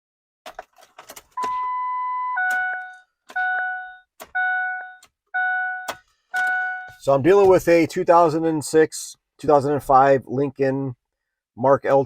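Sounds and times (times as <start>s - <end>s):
steady electronic beep: 1.4s - 7.1s.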